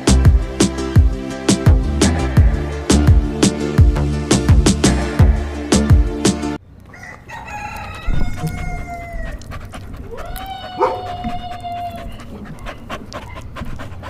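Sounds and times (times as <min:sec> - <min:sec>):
dog howling: 0:08.1 - 0:13.5.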